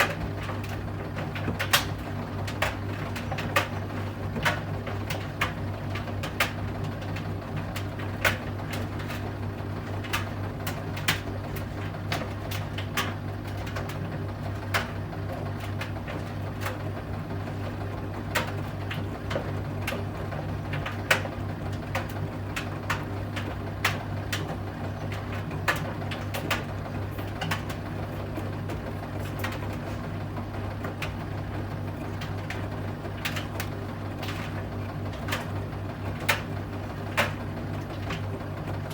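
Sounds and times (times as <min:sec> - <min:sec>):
washing machine motor hum: 0:00.0 - 0:38.9.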